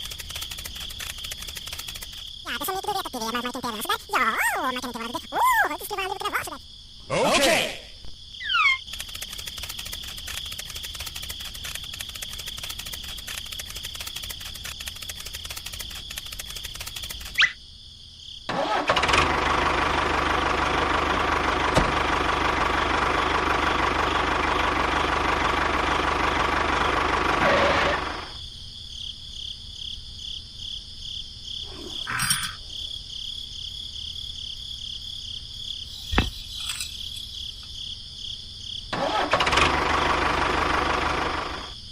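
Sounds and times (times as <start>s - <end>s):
small motor ticking: 0.0s - 2.3s, 8.8s - 17.4s
crickets chirping: 0.0s - 18.7s, 27.9s - 39.3s, 40.8s - 41.9s.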